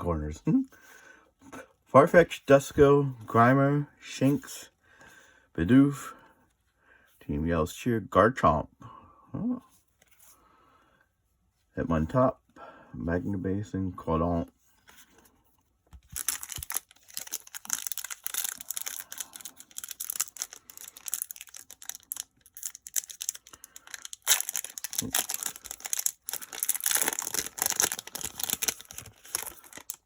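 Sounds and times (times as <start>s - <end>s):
foil wrapper crinkling and tearing: 16.1s - 30.0s.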